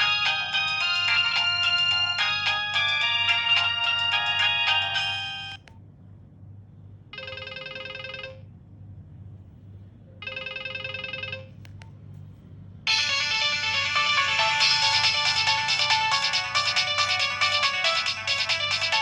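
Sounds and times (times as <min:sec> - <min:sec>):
buzzing trilling ringtone: 0:00.0 - 0:05.6, 0:12.9 - 0:19.0
phone ringtone melody: 0:00.0 - 0:05.6, 0:10.2 - 0:11.6, 0:12.9 - 0:19.0.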